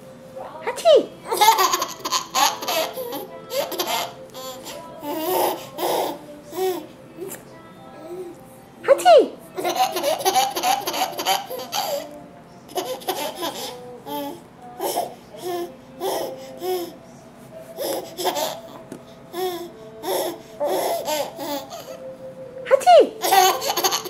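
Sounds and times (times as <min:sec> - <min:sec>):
baby laughing: 0:01.3 - 0:06.9, 0:09.0 - 0:12.1, 0:12.7 - 0:16.9, 0:17.8 - 0:22.0, 0:22.7 - 0:24.0.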